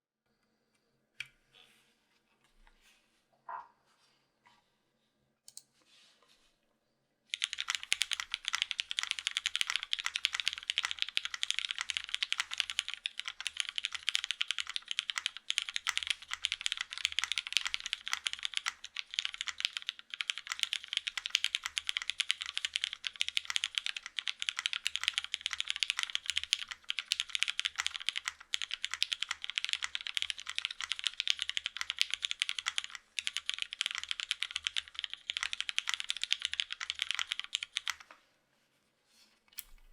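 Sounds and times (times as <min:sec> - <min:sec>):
fast typing on mechanical keyboard: 0:07.3 - 0:38.1.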